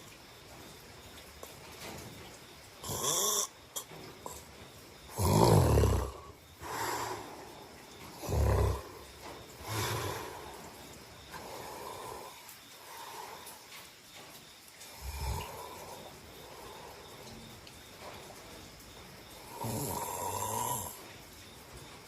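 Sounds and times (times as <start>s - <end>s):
person snoring: 2.8s - 3.5s, 5.1s - 7.4s, 8.1s - 10.6s, 14.9s - 16.6s, 19.5s - 21.0s.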